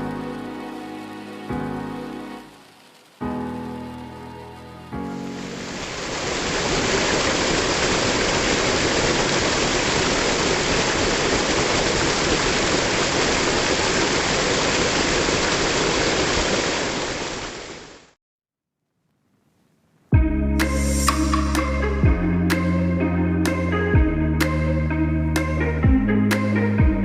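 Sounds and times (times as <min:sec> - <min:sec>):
waterfall rushing: 0:00.0 - 0:18.1.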